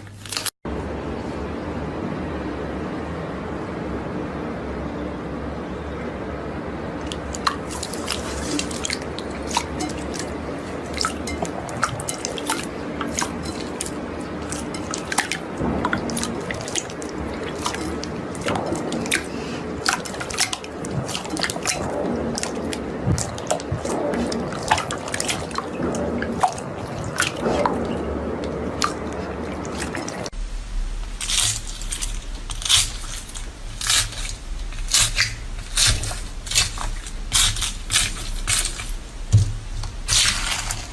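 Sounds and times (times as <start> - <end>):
low steady hum: 0.0 - 40.9.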